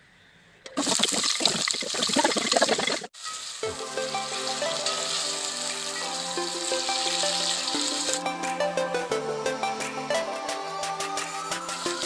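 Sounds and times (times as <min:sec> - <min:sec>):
onions sizzling in hot oil: 0:00.8 - 0:08.2
background music with held notes: 0:03.2 - 0:12.0.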